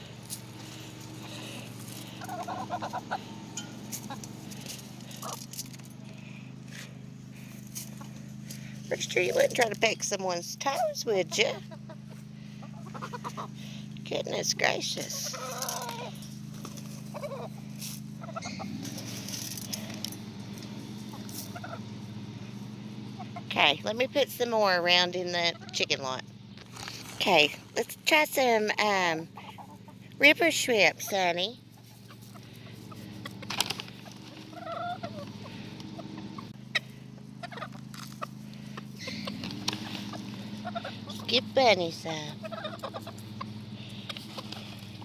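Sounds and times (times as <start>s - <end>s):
chickens clucking: 0.0s - 45.0s
steady low hum: 0.0s - 45.0s
clicks and patters on ground: 0.1s - 3.2s, 3.8s - 9.7s, 26.6s - 27.8s
chickens clucking softly: 0.6s - 5.4s, 11.4s - 13.6s, 16.7s - 18.8s, 21.0s - 21.9s, 31.7s - 41.4s, 42.3s - 45.0s.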